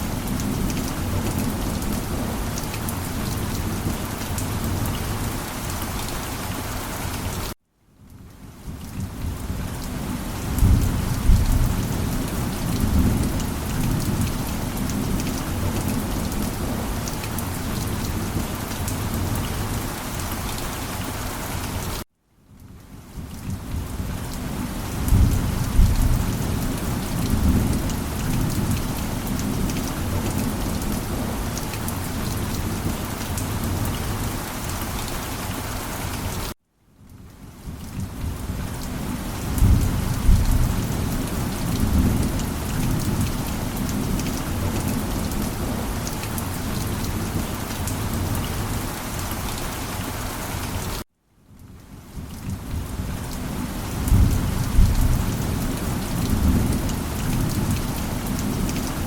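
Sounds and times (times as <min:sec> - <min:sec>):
heavy rain: 0:00.0 - 0:59.0
thunder rumbling: 0:25.0 - 0:31.5, 0:54.0 - 0:58.7.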